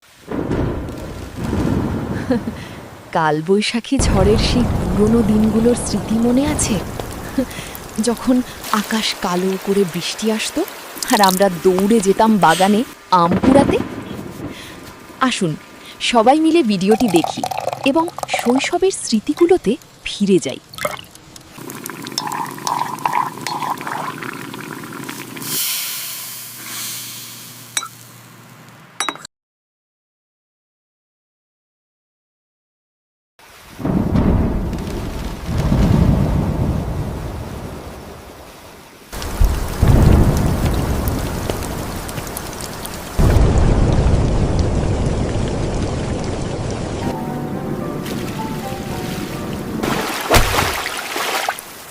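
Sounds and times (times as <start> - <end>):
rain splashing patter: 0.0 - 25.6, 33.4 - 51.9
thunder rumbling: 0.2 - 3.2, 4.0 - 20.1, 33.7 - 50.8
water hiss: 4.1 - 13.0, 15.7 - 19.6, 20.7 - 27.8, 48.1 - 51.9
drip-like clicks: 20.7 - 23.8.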